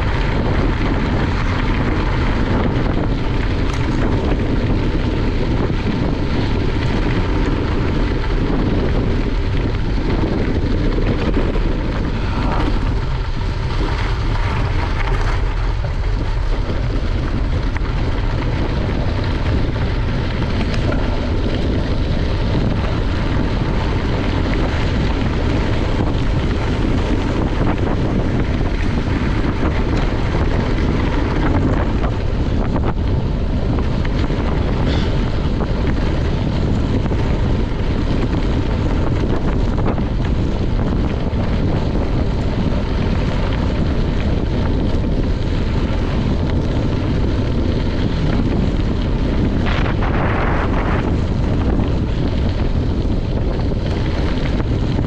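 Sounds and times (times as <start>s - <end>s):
wind buffeting microphone: 0.0s - 55.0s.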